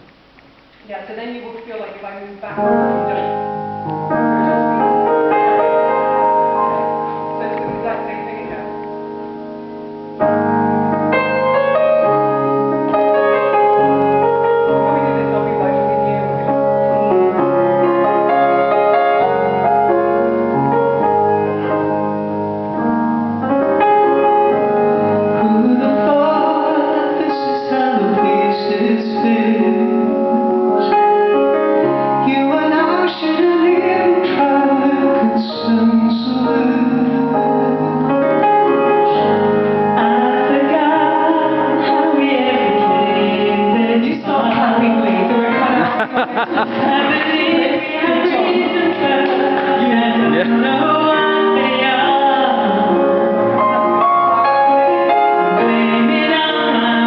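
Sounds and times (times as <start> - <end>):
piano playing: 2.2 - 57.0
woman singing a ballad: 25.4 - 31.0, 32.2 - 39.3, 39.9 - 53.3, 54.6 - 57.0.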